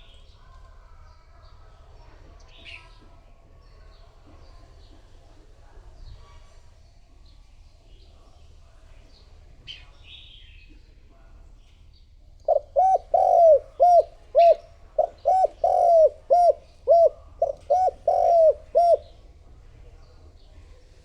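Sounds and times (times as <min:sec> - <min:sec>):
dove cooing: 0:12.5 - 0:19.2.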